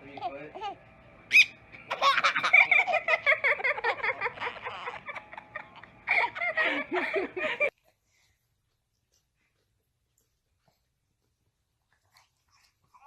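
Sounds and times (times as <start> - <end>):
young child giggling: 1.9 - 7.7.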